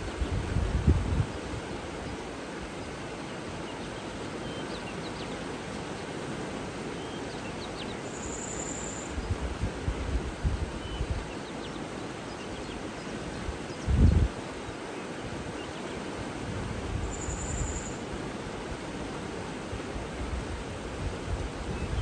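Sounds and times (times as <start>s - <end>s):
wind buffeting microphone: 0.0s - 1.9s, 9.2s - 11.3s, 13.6s - 14.4s, 20.1s - 22.0s
rushing hiss of water or wind: 0.0s - 22.0s
faint bird chirps: 7.0s - 9.4s, 17.0s - 18.0s.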